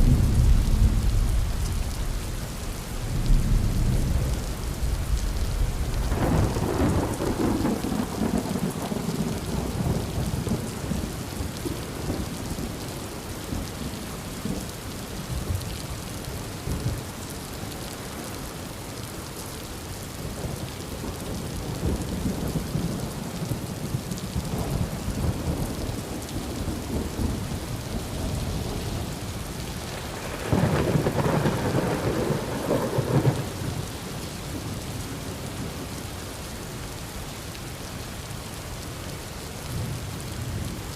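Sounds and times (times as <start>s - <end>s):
rolling thunder: 0.0s - 11.4s, 29.9s - 33.9s
heavy rain: 0.0s - 40.9s.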